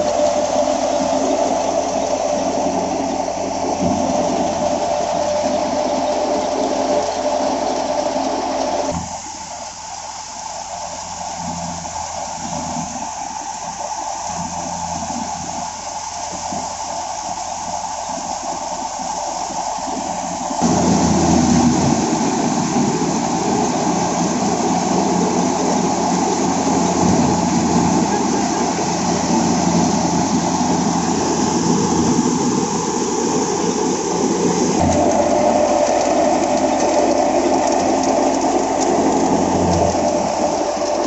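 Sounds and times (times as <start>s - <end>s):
tractor engine hum: 0.0s - 41.0s
thresher mechanical noise: 20.2s - 41.0s.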